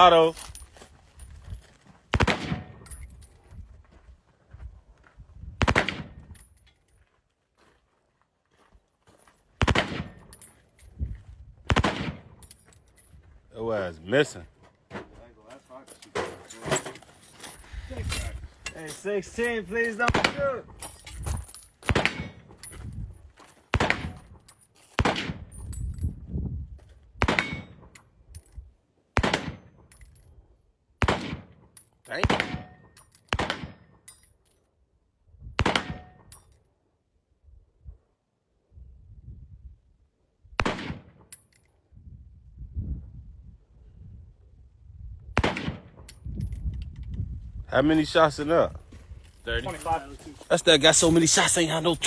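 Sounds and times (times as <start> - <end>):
gunshots with echo: 2.2 - 2.8, 20.0 - 20.6, 23.7 - 24.2, 32.2 - 33.8.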